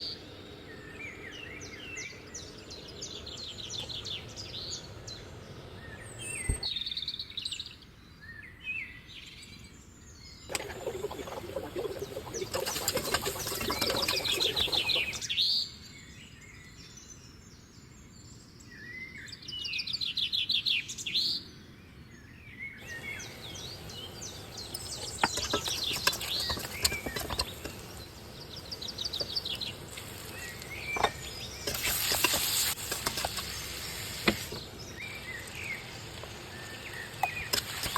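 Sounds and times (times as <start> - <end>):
even hiss: 22.8 - 37.9.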